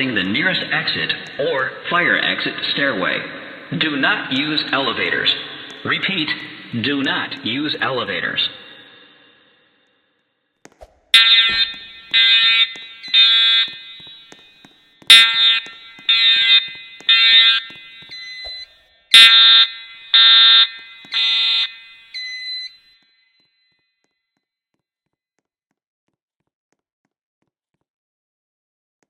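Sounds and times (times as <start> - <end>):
fire alarm horn blasts: 11.2 - 23.4.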